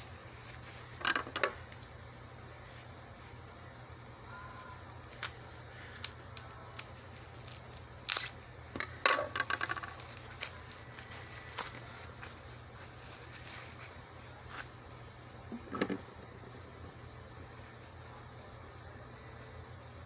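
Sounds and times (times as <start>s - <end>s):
packaging crackling and clicks: 5.0s - 8.4s.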